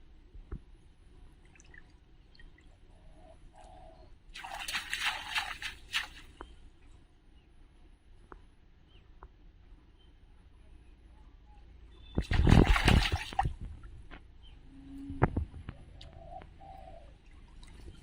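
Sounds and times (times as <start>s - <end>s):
water splashing: 4.3s - 6.4s, 12.2s - 13.7s
water dripping: 4.4s - 6.4s.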